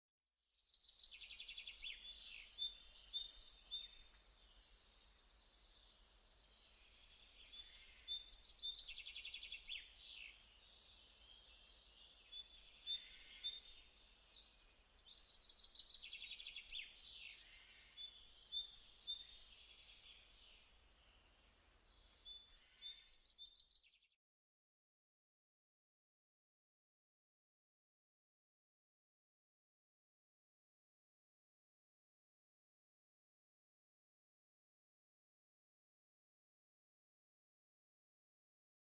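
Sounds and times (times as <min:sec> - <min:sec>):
small birds chirping: 0:00.6 - 0:24.1.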